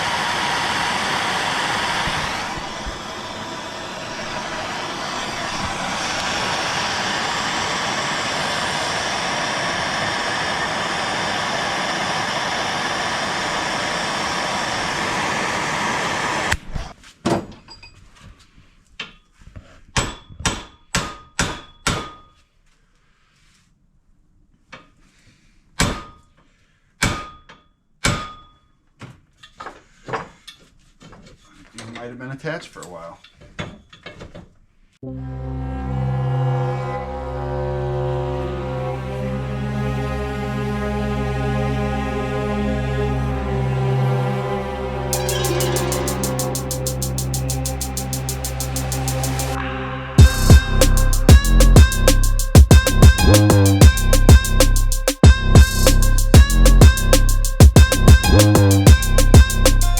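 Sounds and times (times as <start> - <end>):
torch hissing: 0.0 - 16.6.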